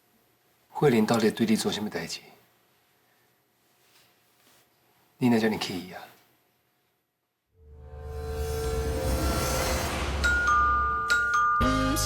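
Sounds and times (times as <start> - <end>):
dramatic background music: 7.6 - 11.9
chime notes over low bass: 7.7 - 12.0.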